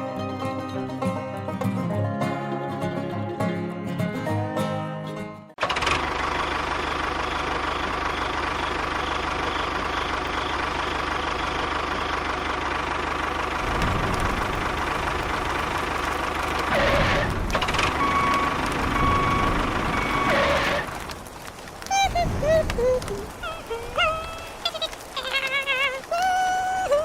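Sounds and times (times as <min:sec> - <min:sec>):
heavy low rumble: 0:06.0 - 0:25.9.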